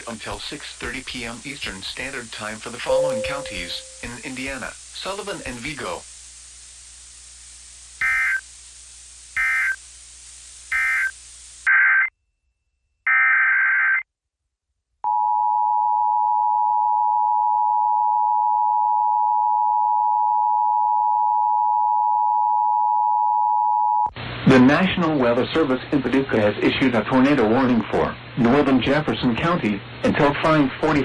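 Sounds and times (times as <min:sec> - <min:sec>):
two-tone attention signal: 0:02.9 - 0:04.2.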